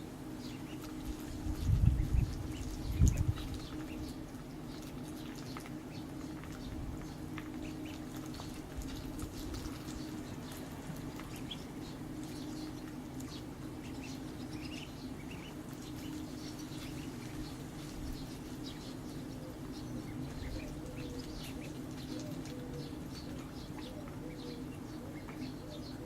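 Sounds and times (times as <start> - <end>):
ducklings peeping: 0.0 - 26.0
steady low hum: 0.0 - 26.0.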